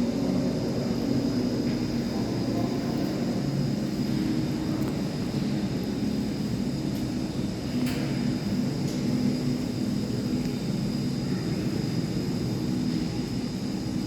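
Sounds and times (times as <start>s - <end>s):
machinery low hum: 0.0s - 14.0s.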